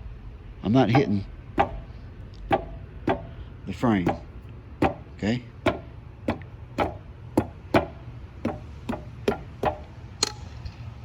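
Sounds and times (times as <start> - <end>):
low steady hum: 0.0 - 11.0
pry bar knocking on rubber track: 1.0 - 1.9, 2.5 - 3.4, 4.0 - 9.9.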